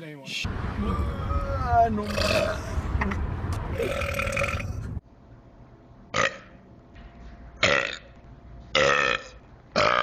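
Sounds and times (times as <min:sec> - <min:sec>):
person belching: 0:02.0 - 0:02.7, 0:03.8 - 0:04.8, 0:08.8 - 0:10.0.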